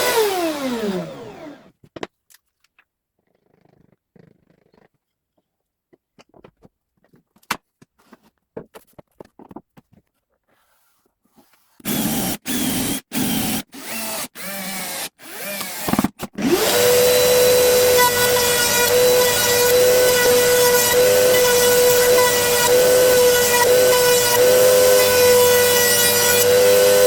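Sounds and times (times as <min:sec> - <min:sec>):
electric power tool whirring: 0:00.0 - 0:01.7, 0:11.9 - 0:27.0.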